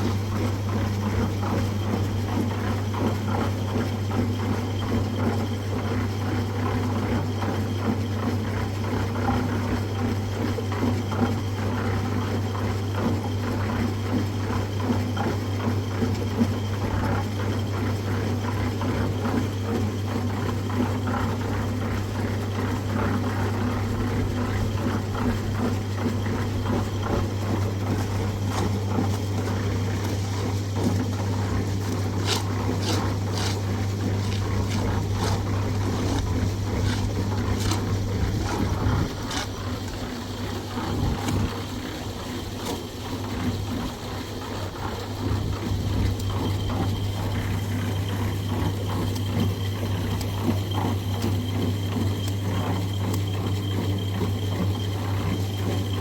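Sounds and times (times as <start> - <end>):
small engine humming: 23.8 - 56.0.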